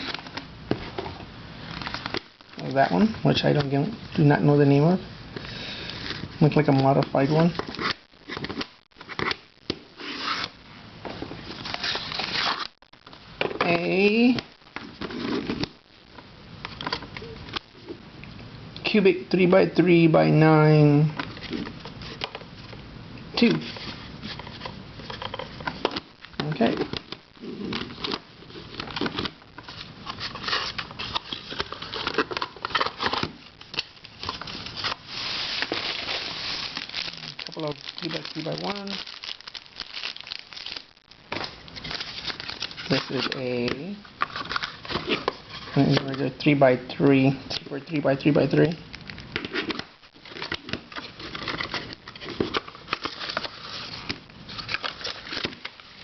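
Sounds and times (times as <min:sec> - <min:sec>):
plastic puzzles clicking and rattling: 0:35.7 - 0:43.4.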